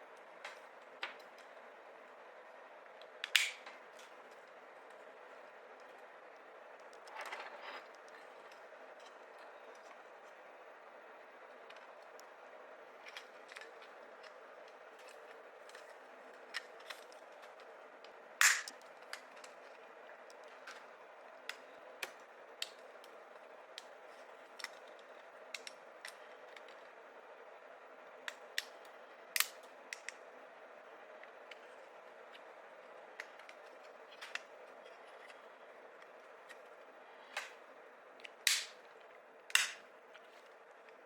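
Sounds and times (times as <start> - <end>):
steady low hum: 0.0 - 41.0
plastic snaps: 3.2 - 3.7, 18.4 - 18.8, 38.3 - 38.8, 39.5 - 39.8
clicks of plastic parts handled: 38.2 - 38.8, 39.5 - 39.8.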